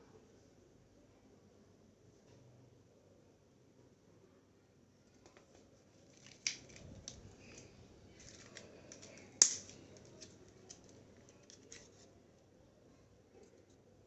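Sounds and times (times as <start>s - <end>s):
small clicks and light scraping: 5.1s - 12.5s
sharp plastic clicks: 6.2s - 11.9s.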